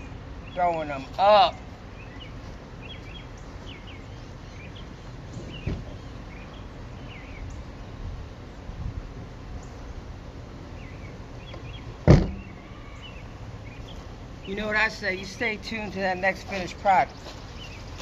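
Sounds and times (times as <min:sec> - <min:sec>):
low steady background noise: 0:00.0 - 0:18.0
small birds chirping: 0:00.0 - 0:18.0
loud sharp thump: 0:12.0 - 0:12.5.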